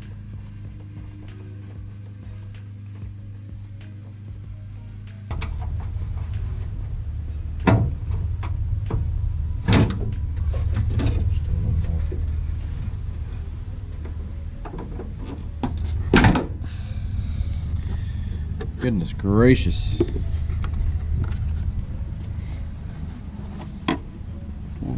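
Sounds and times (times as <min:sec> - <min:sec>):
steady low rumble: 0:00.0 - 0:24.9.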